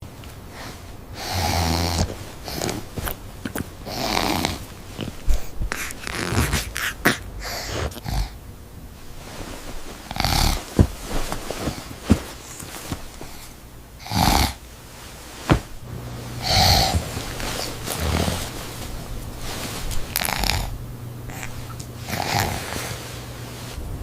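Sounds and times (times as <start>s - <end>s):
man snoring: 1.2s - 2.8s, 3.9s - 4.6s, 6.0s - 8.4s, 10.1s - 10.7s, 14.0s - 14.6s, 16.4s - 18.5s, 20.2s - 23.0s
rustling: 1.7s - 8.0s, 8.9s - 24.0s.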